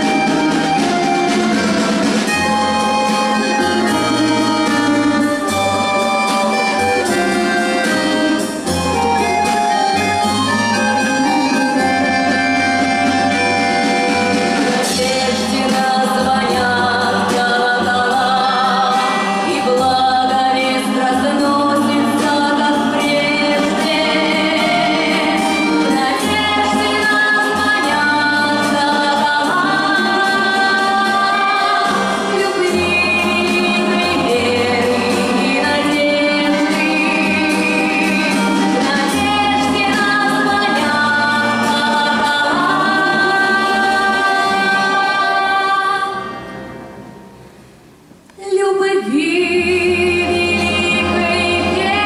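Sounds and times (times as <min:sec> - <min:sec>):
woman singing with vibrato: 0:00.0 - 0:46.7, 0:48.3 - 0:52.0
musical accompaniment with bass: 0:00.0 - 0:52.0.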